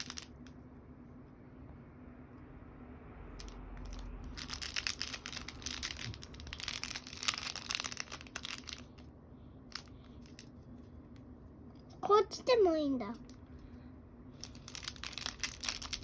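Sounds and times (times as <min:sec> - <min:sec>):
crumpling crackle: 0:00.0 - 0:00.5, 0:03.4 - 0:09.1, 0:09.7 - 0:11.2, 0:14.3 - 0:16.0.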